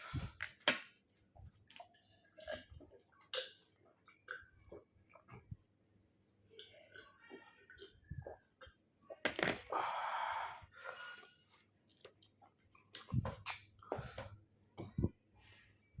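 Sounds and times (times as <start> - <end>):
lip smacks and mouth clicks: 12.0 - 13.8.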